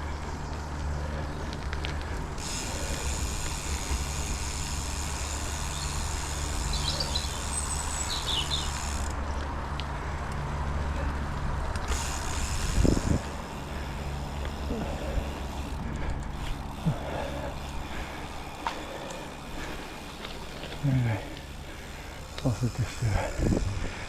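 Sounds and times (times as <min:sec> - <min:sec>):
bike tyre noise on gravel: 0:00.0 - 0:24.0
wind rumbling on microphone: 0:09.7 - 0:13.8, 0:22.6 - 0:24.0.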